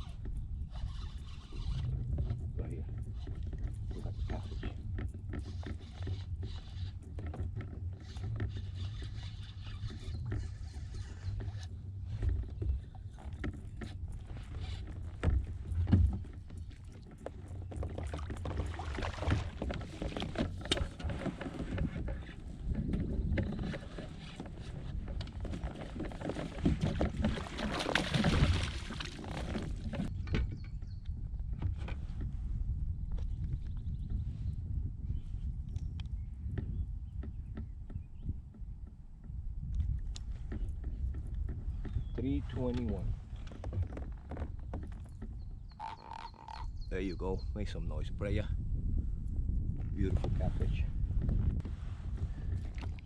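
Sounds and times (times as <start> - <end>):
water noise: 3.2 - 30.1, 45.7 - 46.8.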